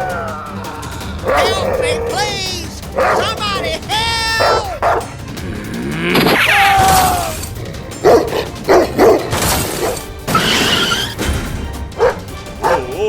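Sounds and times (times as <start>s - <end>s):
background music: 0.0s - 13.0s.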